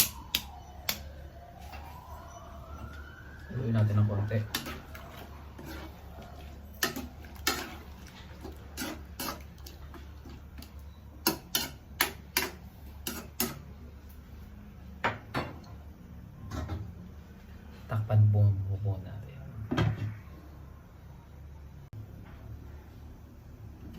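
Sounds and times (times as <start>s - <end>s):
spoon clinking against pot: 4.5s - 7.8s, 11.2s - 13.6s.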